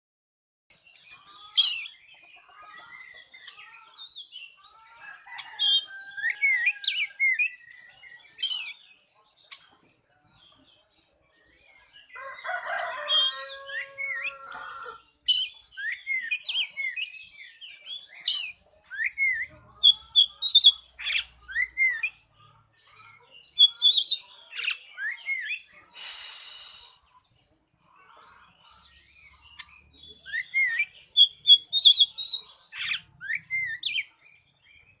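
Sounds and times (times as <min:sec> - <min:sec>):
bird singing whistles and chirps: 0:00.9 - 0:02.1, 0:06.3 - 0:08.8, 0:12.9 - 0:19.5, 0:29.6 - 0:34.1
harsh bird call: 0:12.2 - 0:15.5
rasping bird call: 0:12.8 - 0:15.0.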